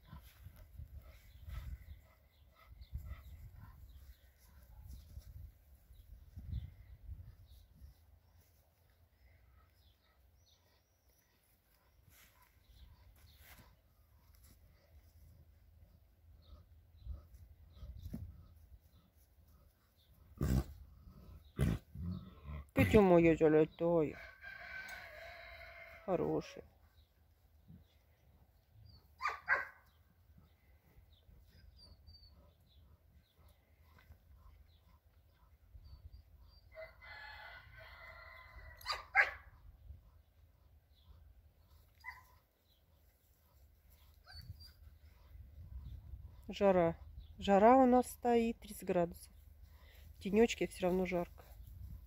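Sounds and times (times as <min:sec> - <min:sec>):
small birds chirping: 0:26.9 - 0:36.9, 0:39.8 - 0:52.0
dog barking: 0:29.2 - 0:29.8, 0:38.9 - 0:39.4.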